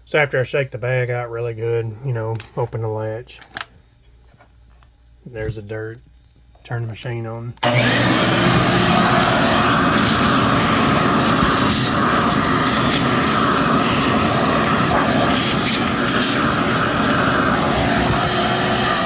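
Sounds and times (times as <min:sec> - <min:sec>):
shop vac running: 0:07.6 - 0:19.0.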